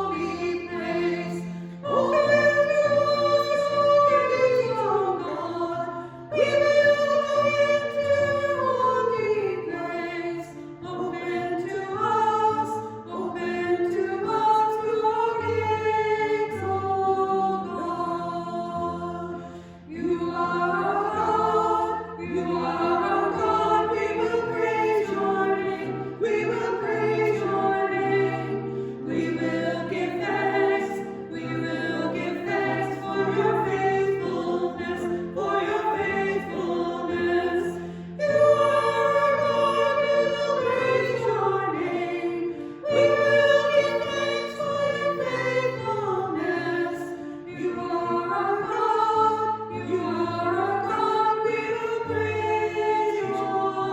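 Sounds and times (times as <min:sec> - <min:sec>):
choir singing a hymn: 0:00.0 - 0:53.9.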